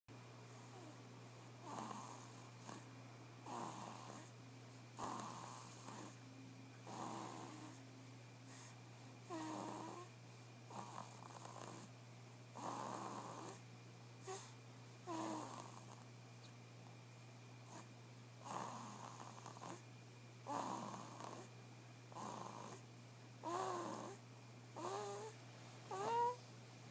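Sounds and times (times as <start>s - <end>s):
steady low hum: 0.1s - 26.9s
baby snoring: 0.5s - 4.4s, 5.0s - 6.2s, 6.8s - 7.8s, 8.5s - 10.1s, 10.7s - 11.9s, 12.5s - 13.6s, 14.2s - 16.0s, 17.6s - 19.8s, 20.4s - 21.5s, 22.1s - 22.8s, 23.4s - 26.4s.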